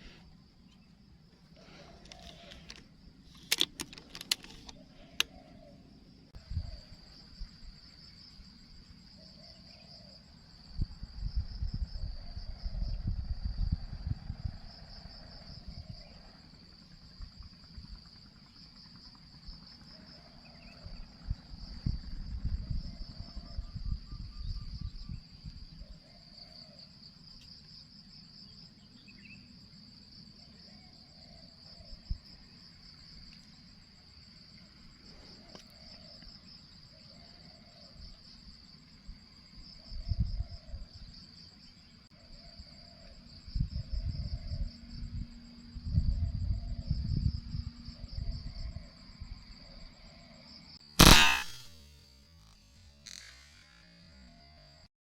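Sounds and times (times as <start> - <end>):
insects chirping: 0.0 - 54.9
wind buffeting microphone: 10.8 - 14.8, 45.8 - 48.6.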